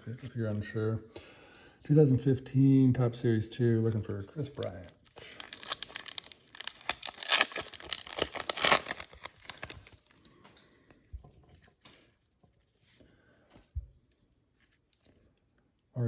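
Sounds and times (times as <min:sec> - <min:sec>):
cards rustling and tapping: 0:04.4 - 0:12.8
foil wrapper tearing and crinkling: 0:04.6 - 0:10.1.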